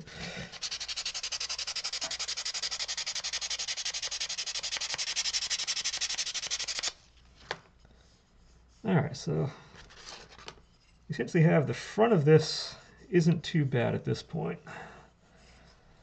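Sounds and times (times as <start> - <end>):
sandpaper rubbing on wood: 0.5 - 7.0.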